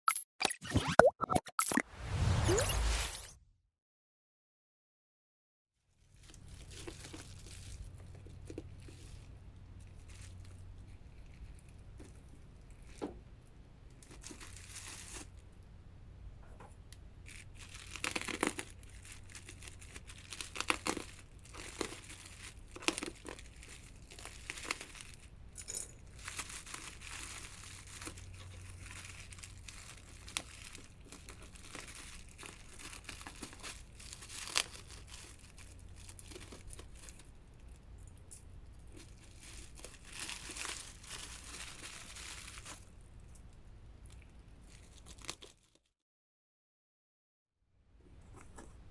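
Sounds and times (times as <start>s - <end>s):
wrapping crinkling and tearing: 6.0s - 13.0s, 14.0s - 15.5s, 17.3s - 37.8s, 38.7s - 43.3s, 44.6s - 45.8s.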